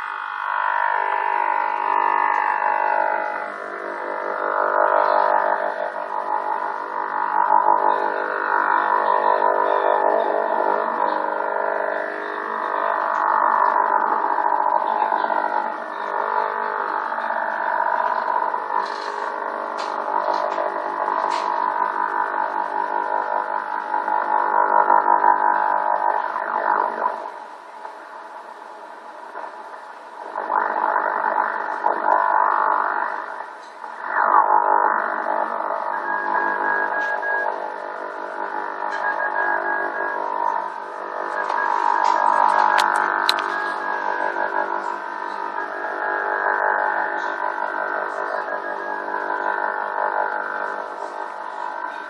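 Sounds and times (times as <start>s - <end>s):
wavering radio tones: 0.0s - 52.0s
broken beeping tone: 38.8s - 45.9s.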